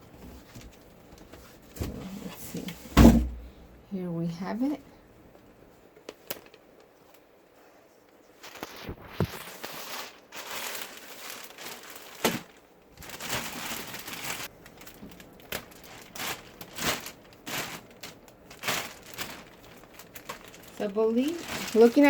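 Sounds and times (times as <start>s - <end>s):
packaging crinkling and rustling: 6.0s - 7.3s, 8.4s - 22.0s.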